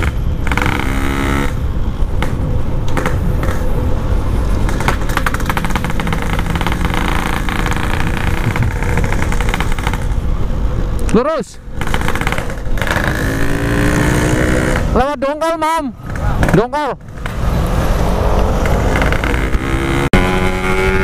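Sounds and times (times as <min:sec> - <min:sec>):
two-stroke motorcycle running: 0:00.0 - 0:02.4, 0:04.6 - 0:10.3, 0:11.8 - 0:15.0, 0:16.0 - 0:21.0
wind rush on microphone: 0:01.6 - 0:11.0.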